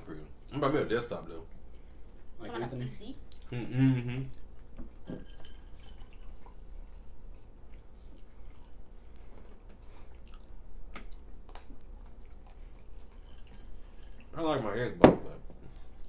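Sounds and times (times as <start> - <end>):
people chewing: 0.4 - 2.4, 3.2 - 14.8, 15.4 - 16.0.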